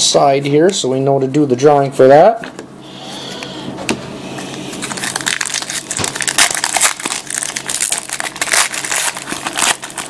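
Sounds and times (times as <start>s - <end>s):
foil wrapper crinkling and tearing: 4.7s - 10.0s.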